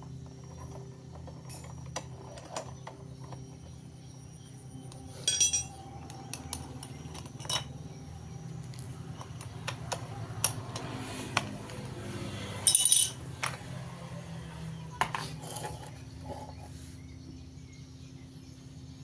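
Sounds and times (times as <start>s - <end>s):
steel parts clinking: 0.5s - 3.4s, 4.9s - 7.9s, 12.6s - 13.6s.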